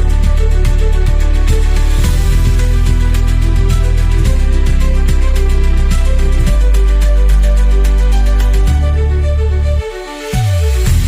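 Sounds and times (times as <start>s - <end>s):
deep held bass: 0.0s - 11.0s.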